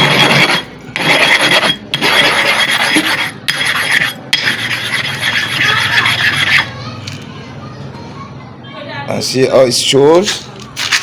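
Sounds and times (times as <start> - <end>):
sharpening stone scraping: 0.0 - 6.7.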